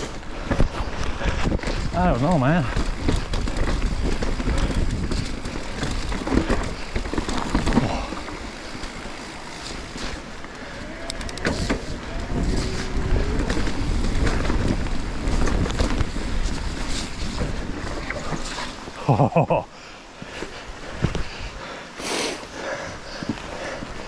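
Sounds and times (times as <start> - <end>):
wind on microphone: 0.0 - 18.9
low rumble: 10.5 - 18.1.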